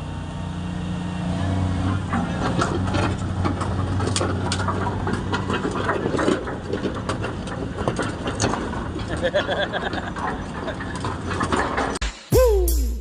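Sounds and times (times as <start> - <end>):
excavator diesel engine running: 0.0 - 12.6
boulders knocking and clacking: 1.8 - 12.0.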